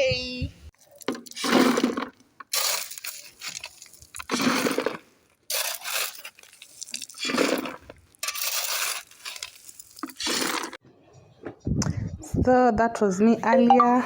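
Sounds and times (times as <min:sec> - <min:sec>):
shovel scraping into gravel: 0:01.3 - 0:10.8.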